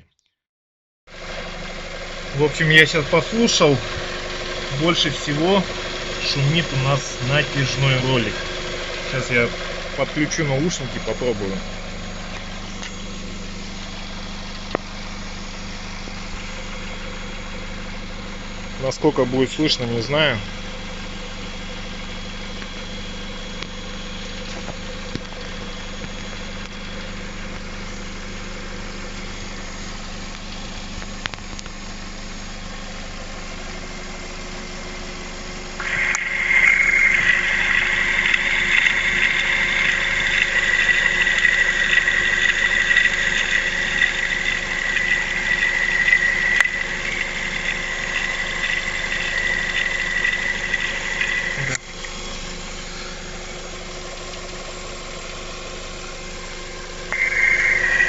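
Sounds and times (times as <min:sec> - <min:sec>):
car engine idling: 0:01.1 - 0:58.0
high whine of belt rollers: 0:01.1 - 0:58.0.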